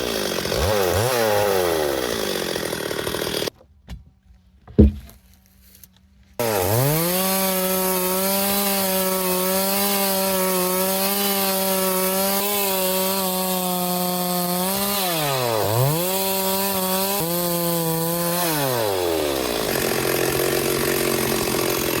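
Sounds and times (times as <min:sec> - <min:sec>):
chainsaw cutting wood: 0:00.0 - 0:03.6, 0:06.4 - 0:22.0.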